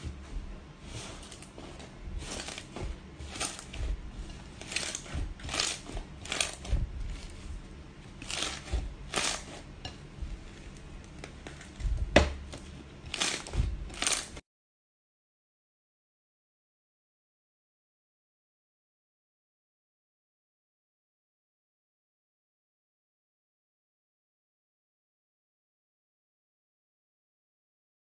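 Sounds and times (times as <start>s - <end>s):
scraping and clattering handling: 0.0s - 14.4s.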